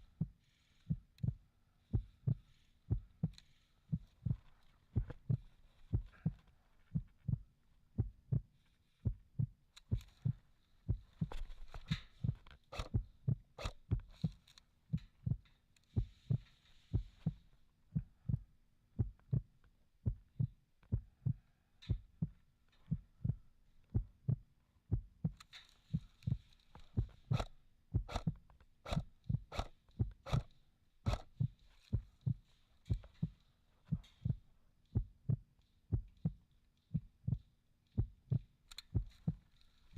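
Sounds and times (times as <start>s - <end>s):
sharp clicks: 11.2s - 13.0s, 13.6s - 14.6s, 25.3s - 33.4s, 38.7s - 39.5s.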